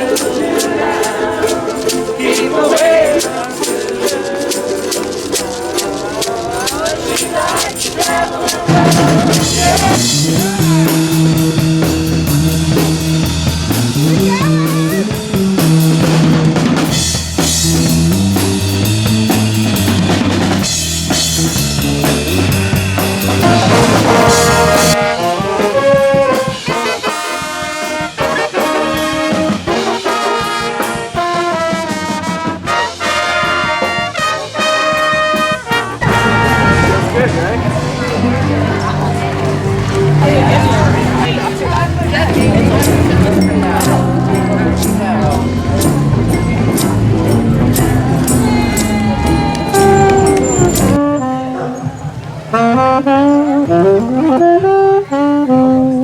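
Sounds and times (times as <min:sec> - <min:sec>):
trumpets and trombones playing: 0:00.0 - 0:56.0
loud rock music: 0:08.6 - 0:51.0.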